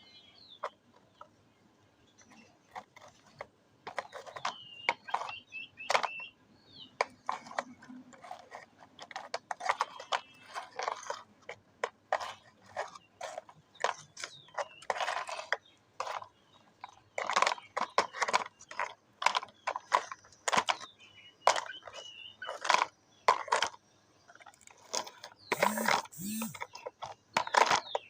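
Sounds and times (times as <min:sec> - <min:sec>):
clicks of small hard objects: 0:02.2 - 0:06.2, 0:07.0 - 0:20.9, 0:21.5 - 0:28.0
bird chirping: 0:04.0 - 0:07.4, 0:25.3 - 0:26.6.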